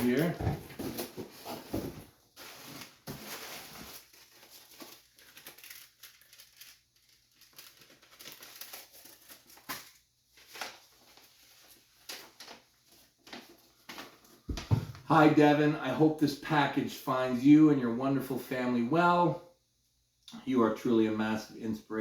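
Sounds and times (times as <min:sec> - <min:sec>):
paper rustling and crinkling: 0:00.0 - 0:14.8.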